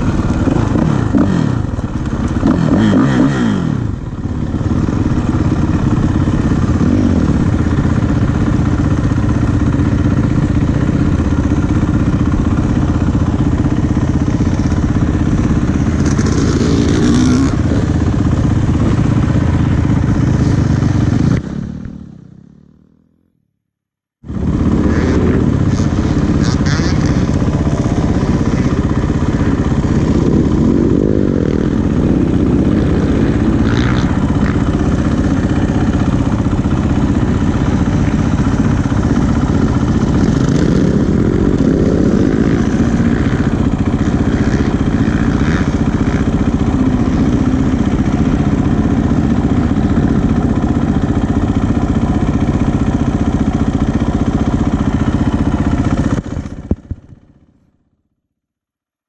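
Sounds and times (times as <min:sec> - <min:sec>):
vehicle rumble: 0:00.0 - 0:23.6, 0:24.2 - 0:57.8.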